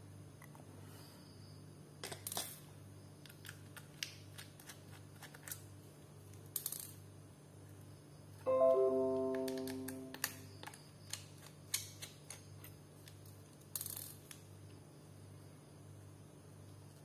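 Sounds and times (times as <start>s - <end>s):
background music strum: 8.5s - 10.3s.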